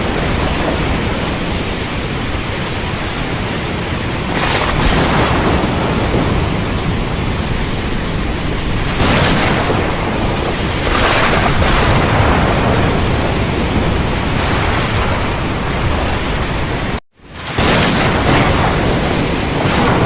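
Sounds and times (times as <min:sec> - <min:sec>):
heavy rain falling: 0:00.0 - 0:20.0
thunder rumbling: 0:00.0 - 0:20.0.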